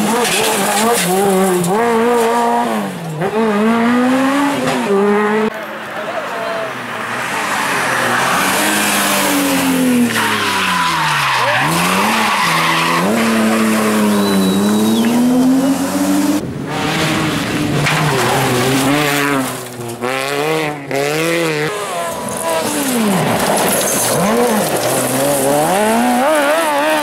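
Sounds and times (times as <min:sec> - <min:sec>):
tyre squeal and skidding: 0:00.0 - 0:01.7, 0:07.0 - 0:15.8, 0:21.7 - 0:27.0
rally car engines revving: 0:00.0 - 0:27.0.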